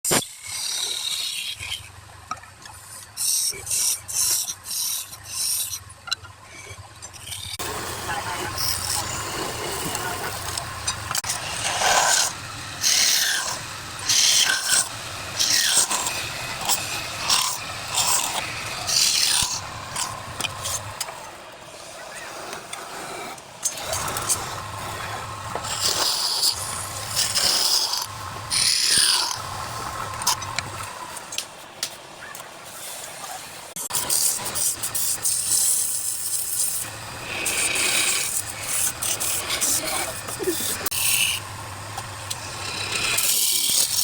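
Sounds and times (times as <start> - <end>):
turning tool scraping wood: 7.5 - 31.4, 32.7 - 44.0
wood lathe running: 7.6 - 31.4, 33.9 - 44.0.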